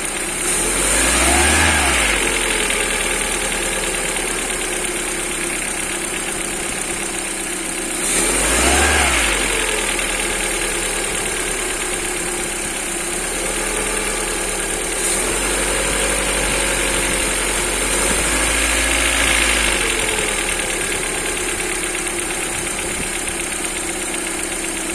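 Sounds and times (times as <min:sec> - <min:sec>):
car engine idling and revving: 0:00.0 - 0:24.9
engine noise on throttle: 0:00.0 - 0:24.9.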